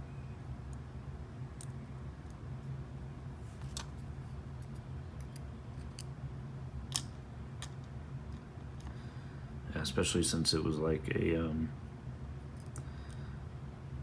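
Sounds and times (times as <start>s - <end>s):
low steady hum: 0.0s - 14.0s
small clicks of lock parts: 4.6s - 6.1s, 6.9s - 7.9s, 12.6s - 13.2s.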